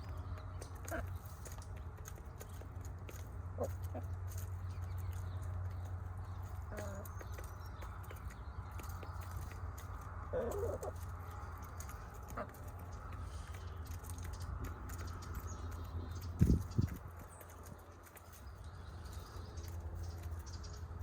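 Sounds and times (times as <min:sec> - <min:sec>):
hens clucking: 0:00.0 - 0:15.3
steady low rumble: 0:00.0 - 0:21.0.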